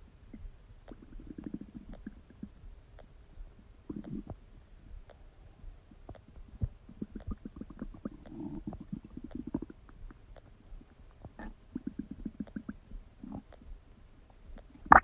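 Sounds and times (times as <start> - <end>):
stomach gurgling: 0.3 - 2.6, 3.9 - 4.4, 6.0 - 13.7, 14.6 - 15.0.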